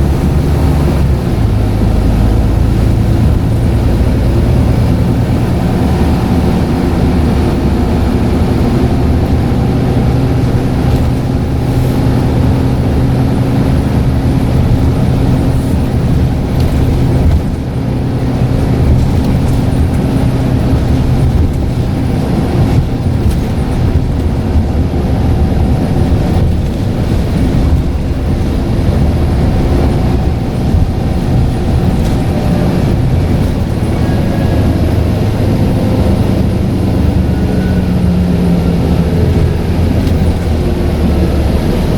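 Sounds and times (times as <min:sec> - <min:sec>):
bus diesel engine running: 0:00.0 - 0:41.9
turbocharger whistle: 0:37.2 - 0:38.8.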